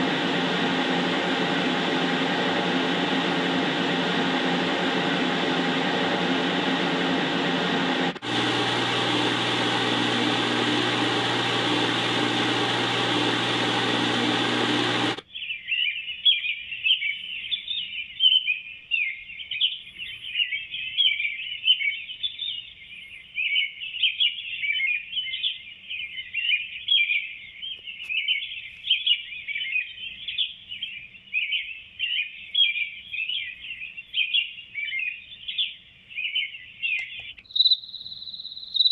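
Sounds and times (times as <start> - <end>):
extractor fan humming: 0.0 - 15.2
dense high chirping: 37.5 - 38.9.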